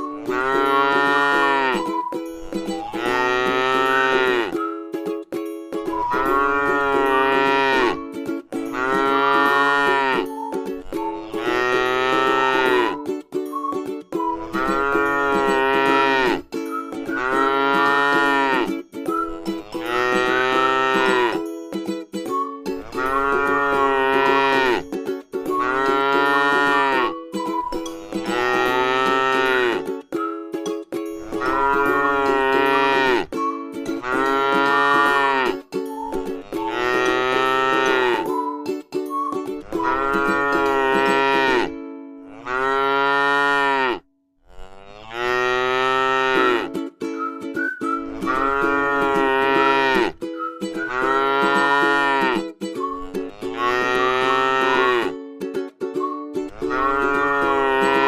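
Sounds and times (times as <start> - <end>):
cow mooing: 0.2 - 1.9, 2.8 - 4.6, 6.0 - 8.0, 8.7 - 10.2, 11.0 - 13.0, 14.5 - 16.4, 17.1 - 18.7, 19.6 - 21.4, 22.8 - 24.8, 25.5 - 27.1, 28.0 - 29.8, 31.4 - 33.3, 34.0 - 35.6, 36.4 - 38.3, 39.8 - 41.7, 42.3 - 46.7, 48.2 - 50.2, 50.8 - 52.4, 53.3 - 55.1, 56.6 - 58.0.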